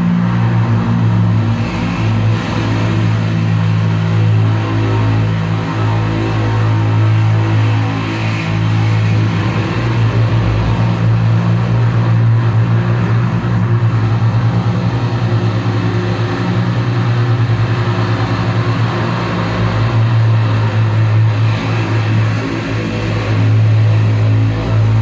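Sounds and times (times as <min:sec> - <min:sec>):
distorted electric guitar drone: 0:00.0 - 0:25.0.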